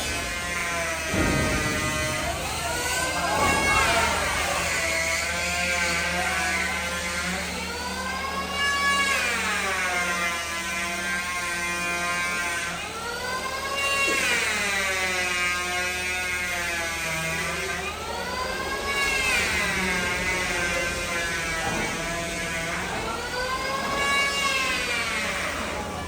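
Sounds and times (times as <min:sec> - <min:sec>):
power tool motor whining: 0:00.0 - 0:26.0.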